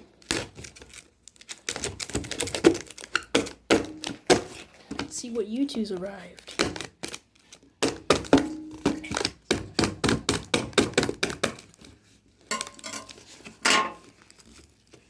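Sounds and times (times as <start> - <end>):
knife cutting cardboard parcel: 0.0 - 5.1, 5.9 - 12.2.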